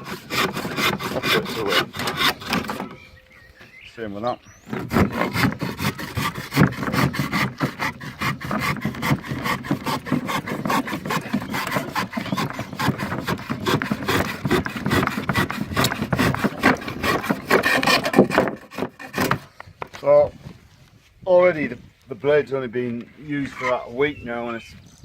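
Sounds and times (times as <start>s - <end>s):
hand saw cutting through timber: 0.0s - 3.0s, 4.6s - 19.5s.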